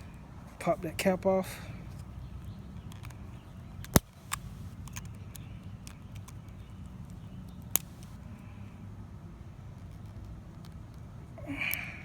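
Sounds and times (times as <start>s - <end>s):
plastic hose coupling clicking: 2.4s - 3.2s, 3.8s - 8.2s.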